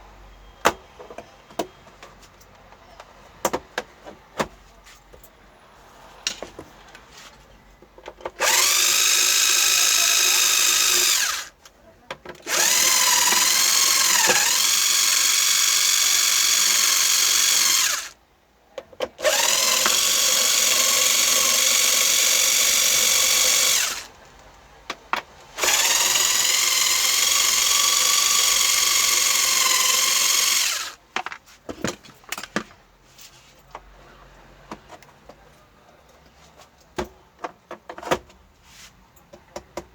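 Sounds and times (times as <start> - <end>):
electric screwdriver motor whining: 8.4 - 11.5, 12.5 - 18.2, 19.2 - 24.1, 25.6 - 31.0.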